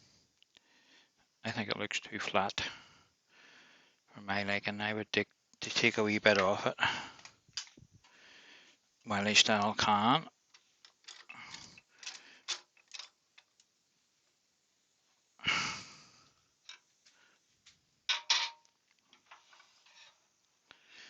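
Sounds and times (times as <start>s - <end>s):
tools and wood clicking: 7.2s - 8.1s, 10.4s - 13.8s, 16.6s - 17.0s, 18.1s - 20.5s.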